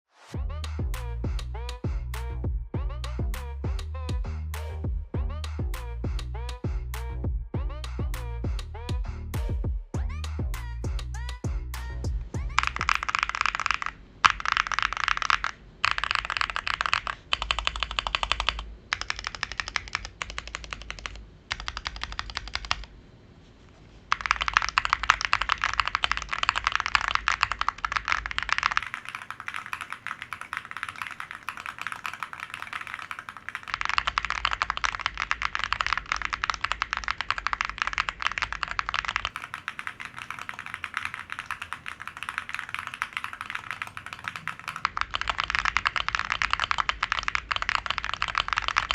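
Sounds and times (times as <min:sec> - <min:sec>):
mechanical keyboard typing: 0:12.5 - 0:22.9, 0:24.1 - 0:48.9.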